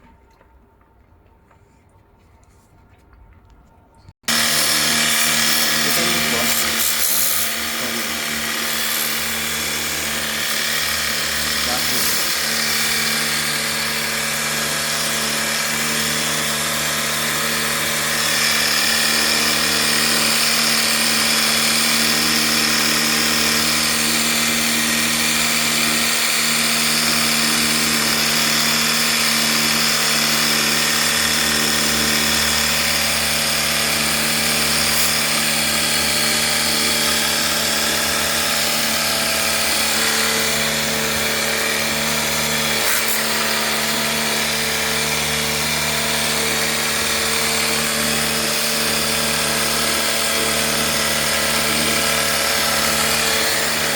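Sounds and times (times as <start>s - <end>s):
pressure washer motor hum: 4.2s - 53.9s
water spray hissing: 5.1s - 8.1s.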